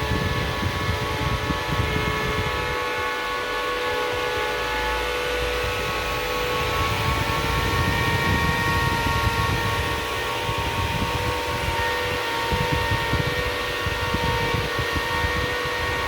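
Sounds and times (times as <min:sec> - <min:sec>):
cooling fans whining: 0:00.0 - 0:16.0.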